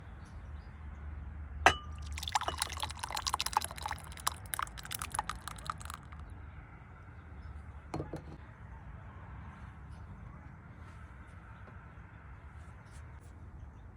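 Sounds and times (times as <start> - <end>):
sharp ringing clink: 1.7 - 2.0
soup pouring with splashes: 1.7 - 6.2.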